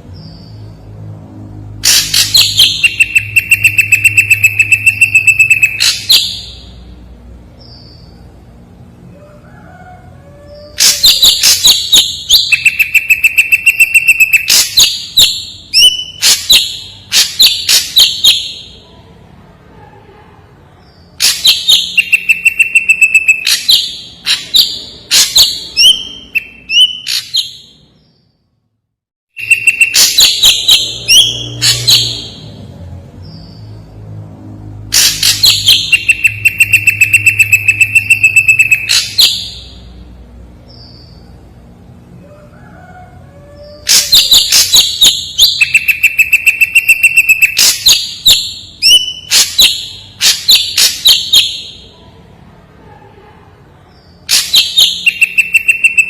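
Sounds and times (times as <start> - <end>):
bird chattering song: 1.8 - 6.7, 10.8 - 18.8, 20.9 - 28.2, 29.4 - 32.6, 35.0 - 39.8, 43.8 - 52.0, 54.0 - 56.0
bird high whistle: 2.3 - 6.3, 10.8 - 16.4, 43.9 - 51.4.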